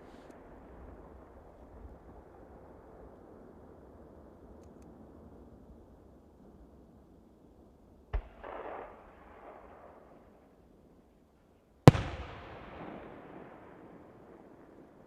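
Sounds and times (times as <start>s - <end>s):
firework shells bursting: 11.9s - 13.4s.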